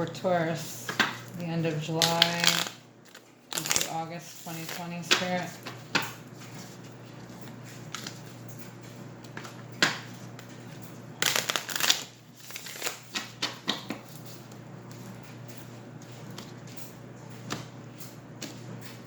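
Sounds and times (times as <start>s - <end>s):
cards being shuffled: 2.0s - 5.3s, 11.2s - 14.0s.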